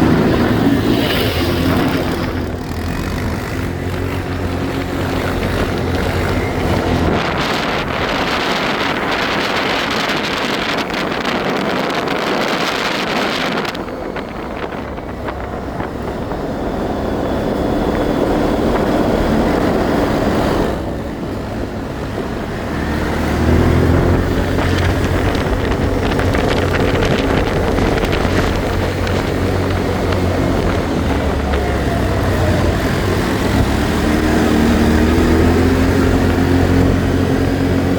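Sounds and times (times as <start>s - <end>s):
atv engine running: 0.0s - 37.9s
rushing noise: 0.0s - 37.9s.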